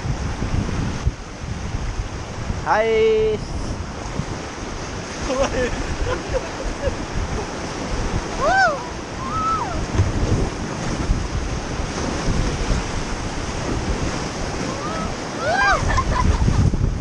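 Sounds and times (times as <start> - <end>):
river water rushing: 0.0 - 17.0
wind buffeting microphone: 0.0 - 17.0
rising and falling cries: 14.7 - 16.1.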